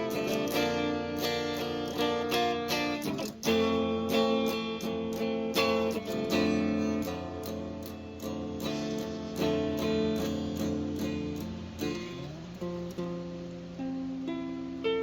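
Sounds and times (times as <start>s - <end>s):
guitar strumming chords: 0.0s - 15.0s.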